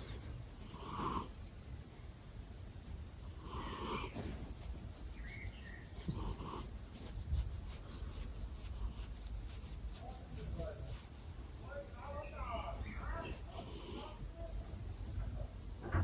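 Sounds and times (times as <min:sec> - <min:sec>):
cat snoring: 0:00.6 - 0:01.3, 0:03.3 - 0:04.2.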